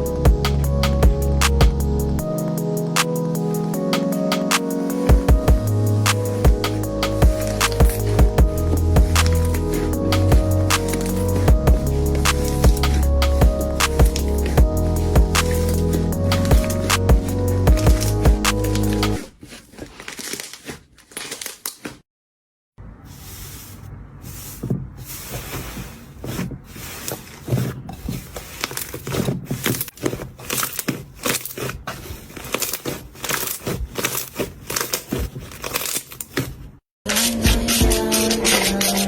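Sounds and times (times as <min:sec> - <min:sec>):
crinkly rustling: 0:05.7 - 0:22.0, 0:23.2 - 0:36.8.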